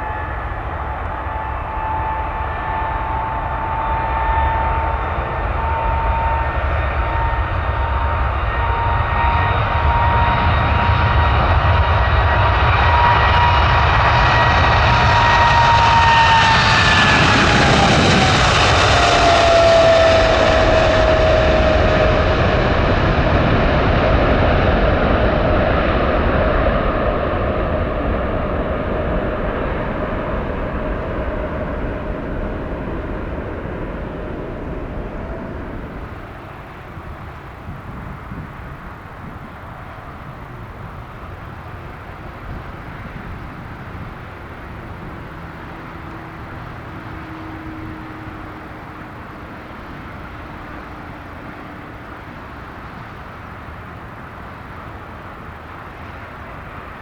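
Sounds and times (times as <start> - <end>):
jet airliner engines roaring: 0.0 - 57.0.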